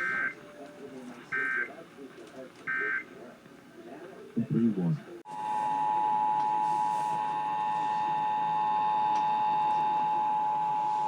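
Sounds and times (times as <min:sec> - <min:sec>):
faint radio hiss: 0:00.0 - 0:05.9.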